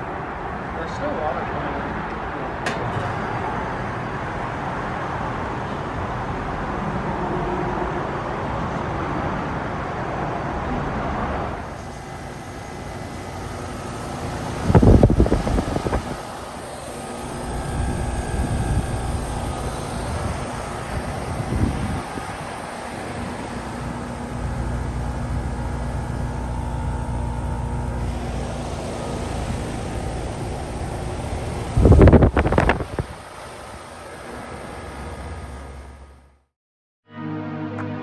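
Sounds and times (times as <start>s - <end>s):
heat pump running: 0.0s - 7.2s, 11.5s - 36.3s
heat pump hissing: 11.6s - 36.0s.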